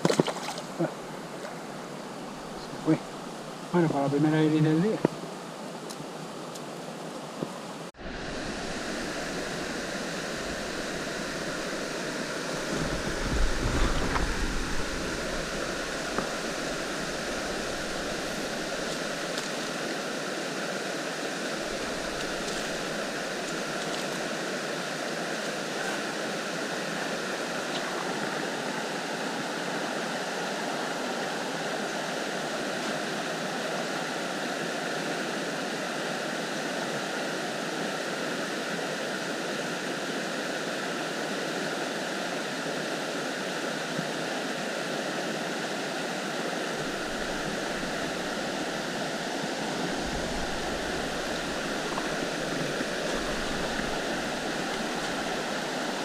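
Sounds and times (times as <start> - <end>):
river water rushing: 0.0 - 56.0
low rumbling: 12.6 - 18.9.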